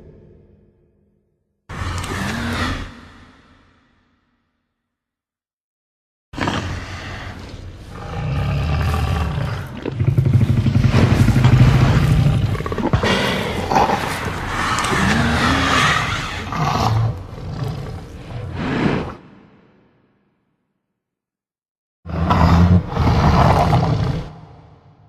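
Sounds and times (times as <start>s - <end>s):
dinosaur roar: 1.7s - 3.6s, 6.4s - 19.3s, 22.1s - 24.8s.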